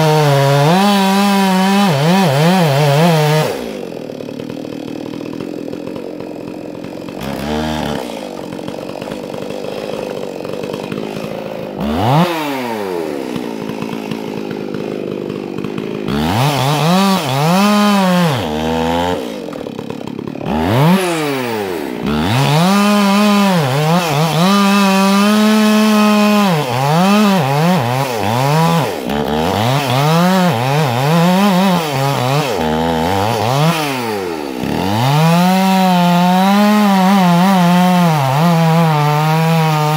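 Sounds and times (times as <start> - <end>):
chainsaw revving cutting wood: 0.0 - 39.9.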